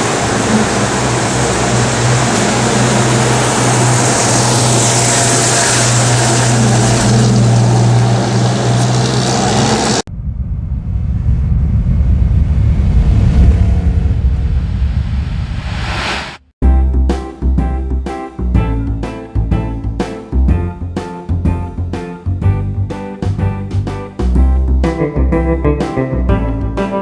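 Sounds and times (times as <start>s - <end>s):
truck engine running: 0.0s - 10.4s
low rumbling engine: 0.0s - 15.0s
hiss: 1.0s - 9.9s.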